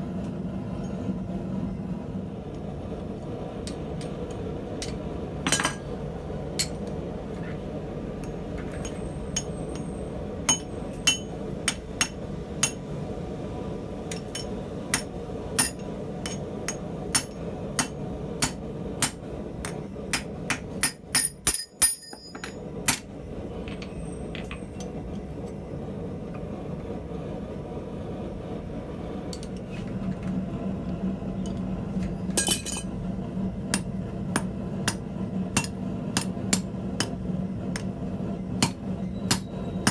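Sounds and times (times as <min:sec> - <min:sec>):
hammer striking iron on anvil: 0:04.8 - 0:05.9, 0:06.6 - 0:06.9, 0:08.2 - 0:12.9, 0:14.1 - 0:23.1, 0:33.7 - 0:37.9, 0:38.6 - 0:39.9.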